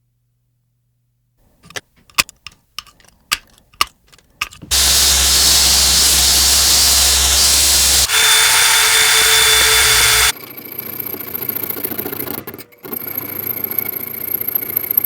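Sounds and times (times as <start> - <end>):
metal tools clacking: 1.6 - 5.4
workshop machine rushing: 4.4 - 10.3.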